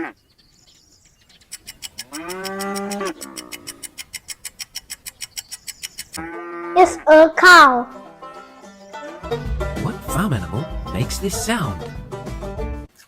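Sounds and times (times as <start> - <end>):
fast even ticking: 1.4 - 6.2
cow mooing: 2.0 - 3.9, 6.2 - 7.1.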